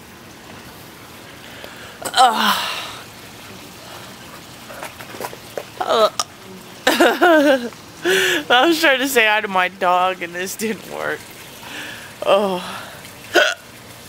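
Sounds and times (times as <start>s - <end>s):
woman hiccuping: 2.0s - 2.7s, 5.8s - 7.2s, 13.3s - 13.7s.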